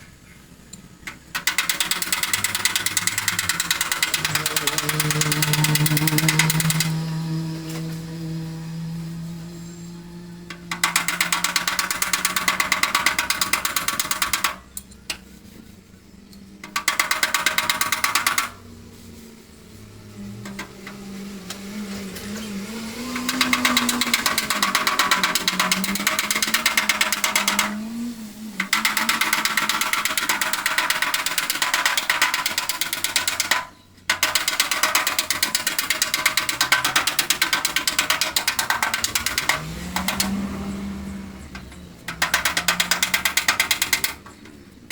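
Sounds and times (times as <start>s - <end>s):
hammer tapping sheet metal: 1.3s - 9.4s, 10.4s - 15.2s, 16.6s - 18.6s, 23.1s - 27.9s, 28.6s - 40.5s, 41.5s - 44.5s.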